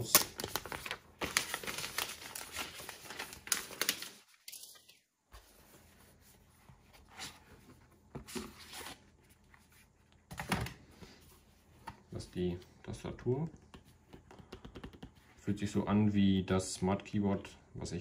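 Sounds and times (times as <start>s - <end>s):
packaging rustling and crinkling: 0.0s - 5.0s.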